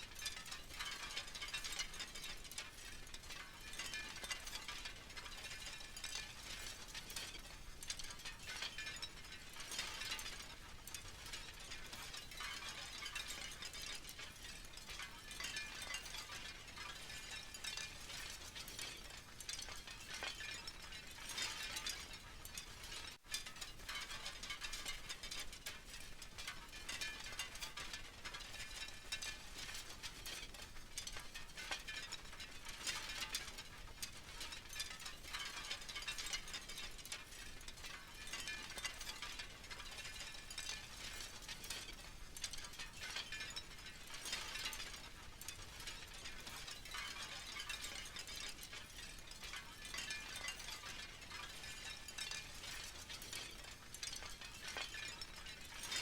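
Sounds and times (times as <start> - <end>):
wind chimes clinking: 3.1 - 25.0, 34.3 - 56.0.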